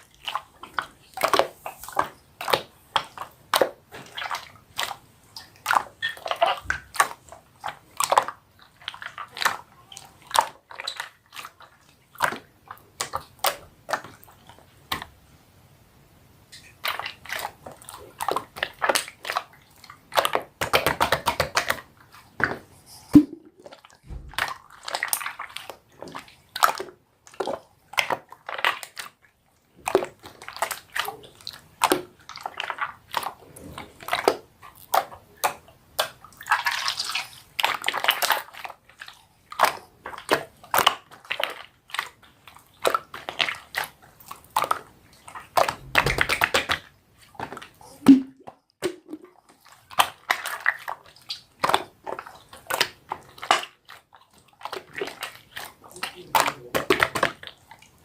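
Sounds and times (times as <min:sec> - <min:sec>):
slime squelching and popping: 0:16.5 - 0:58.0.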